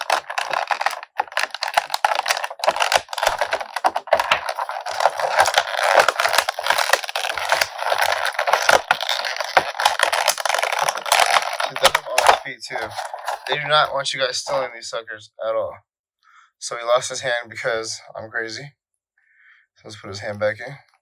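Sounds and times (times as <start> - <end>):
plastic packaging crinkling: 0.0 - 13.9.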